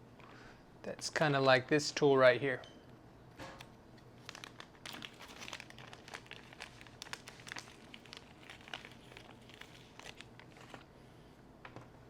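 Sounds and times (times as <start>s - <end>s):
plastic packaging crinkling: 4.2s - 10.9s.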